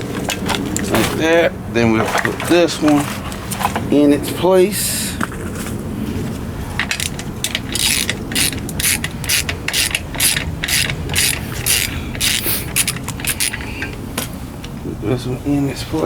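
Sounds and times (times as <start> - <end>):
ratchet clicking: 6.8 - 14.3.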